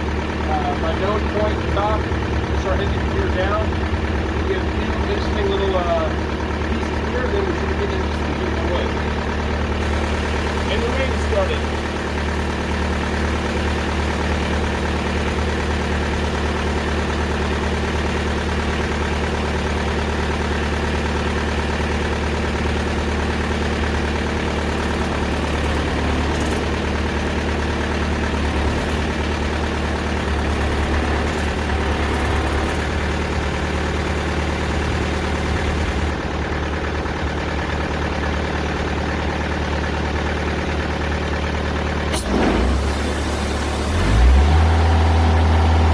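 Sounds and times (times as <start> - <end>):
diesel engine running: 0.0 - 45.9
band saw blade cutting log: 24.6 - 36.1.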